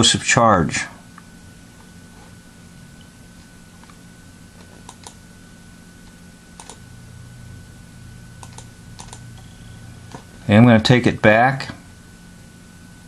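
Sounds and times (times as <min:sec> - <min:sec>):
steady low hum: 0:00.0 - 0:13.0
computer mouse clicks: 0:04.6 - 0:05.2, 0:06.6 - 0:06.8, 0:08.4 - 0:09.5
thin high whine: 0:05.4 - 0:13.0.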